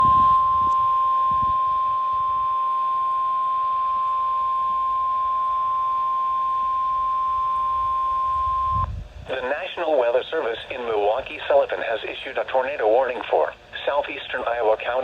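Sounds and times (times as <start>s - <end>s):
long steady high alarm beep: 0.0s - 8.9s
faint radio static: 2.0s - 15.0s.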